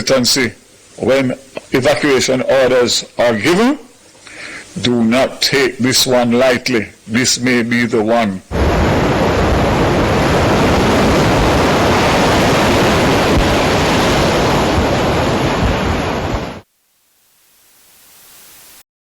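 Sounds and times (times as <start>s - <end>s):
storm wind rushing: 8.5s - 16.6s
surf: 8.5s - 16.6s.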